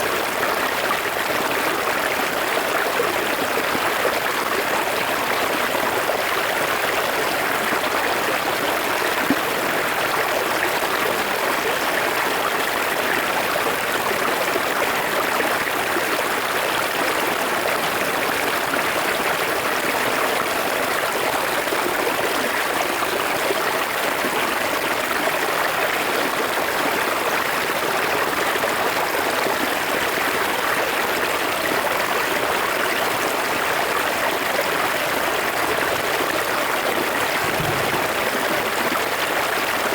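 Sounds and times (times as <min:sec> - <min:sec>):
river water rushing: 0:37.0 - 0:39.9.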